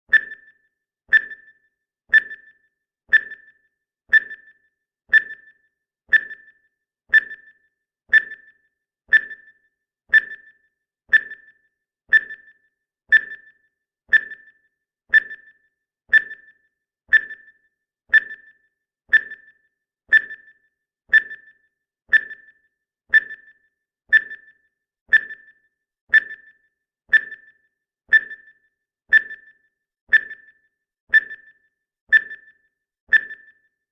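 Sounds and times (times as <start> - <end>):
timer ticking: 0.1 - 33.8.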